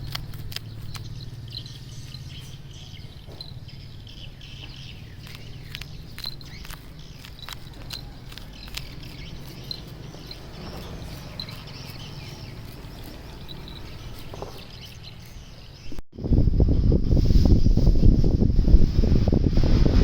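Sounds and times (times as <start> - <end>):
wind buffeting microphone: 15.8 - 20.0.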